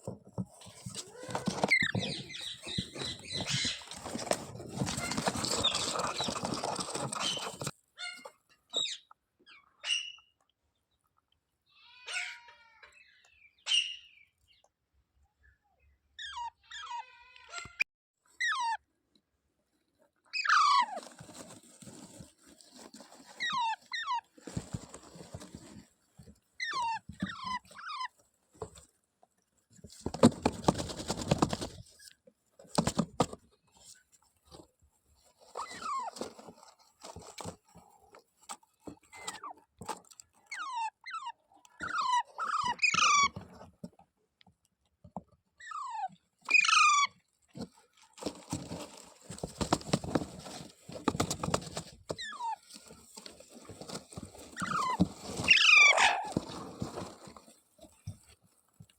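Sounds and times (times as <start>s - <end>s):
parrot squawking and chirping: 18.4s - 18.8s, 20.3s - 21.0s, 40.5s - 43.4s, 45.6s - 47.1s, 54.6s - 56.4s.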